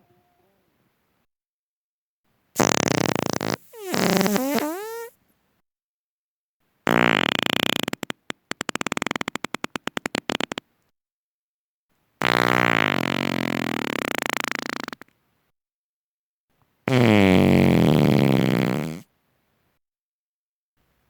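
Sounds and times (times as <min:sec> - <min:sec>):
person farting: 0:02.6 - 0:05.2, 0:06.9 - 0:10.6, 0:12.2 - 0:15.0, 0:16.9 - 0:19.1.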